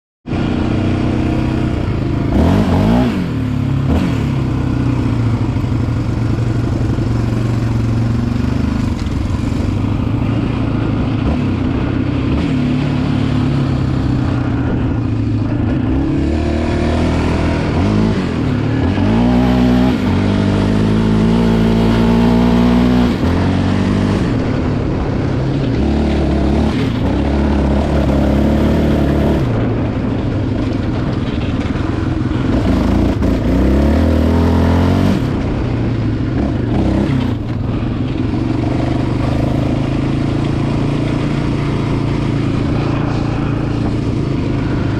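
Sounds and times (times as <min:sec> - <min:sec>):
engine revving up and easing off: 0:00.3 - 0:05.4, 0:07.6 - 0:29.8, 0:32.4 - 0:35.5.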